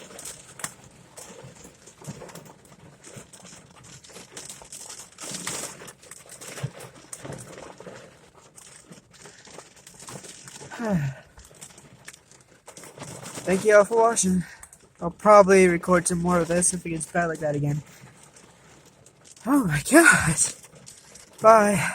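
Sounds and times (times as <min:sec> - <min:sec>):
heavy rain patter: 0:10.3 - 0:11.5, 0:13.3 - 0:18.3, 0:19.2 - 0:21.9.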